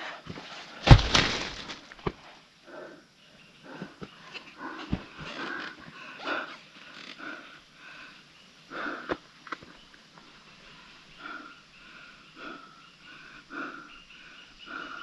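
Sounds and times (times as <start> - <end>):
person panting: 11.2 - 15.0.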